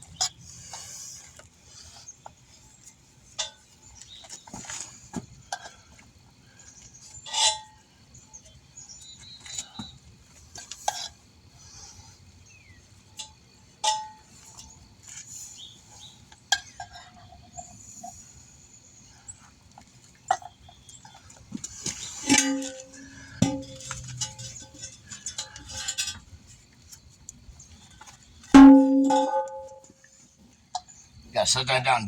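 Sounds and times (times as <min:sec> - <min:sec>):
metal rattles: 0:21.6 - 0:26.4, 0:28.6 - 0:29.9
metallic tool clinks and knocks: 0:22.3 - 0:24.8, 0:28.6 - 0:29.9.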